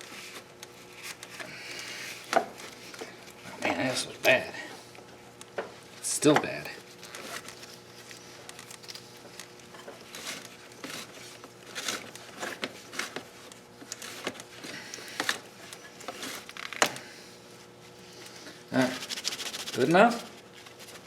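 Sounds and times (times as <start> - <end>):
paper towel scrape: 10.1 - 13.2, 18.8 - 21.0
paper towel rubbing surface: 18.8 - 20.4.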